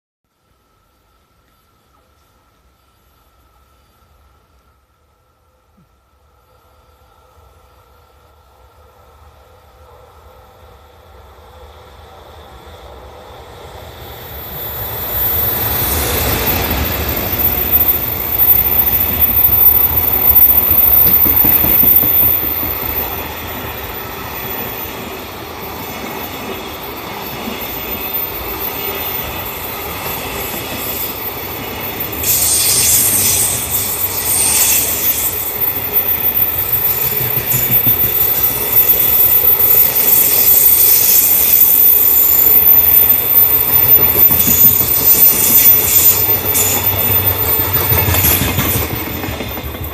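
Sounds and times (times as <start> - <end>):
freight train passing: 0.4 - 49.9
high-pitched wheel squeal: 14.3 - 49.9
wheel clatter on rails: 15.1 - 24.8, 35.6 - 40.1, 42.6 - 49.9.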